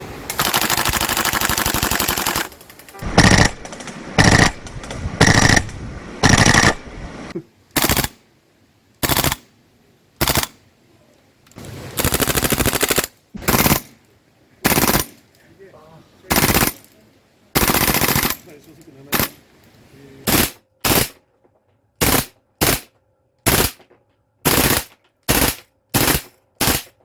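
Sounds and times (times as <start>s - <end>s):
airsoft guns firing full-auto: 0.3s - 4.6s, 5.2s - 5.6s, 6.2s - 6.8s, 7.8s - 8.2s, 9.0s - 9.4s, 10.2s - 10.6s, 12.0s - 14.0s, 14.6s - 15.2s, 16.3s - 16.9s, 17.6s - 18.5s, 19.1s - 19.4s, 20.3s - 21.2s, 22.0s - 22.9s, 23.5s - 27.0s.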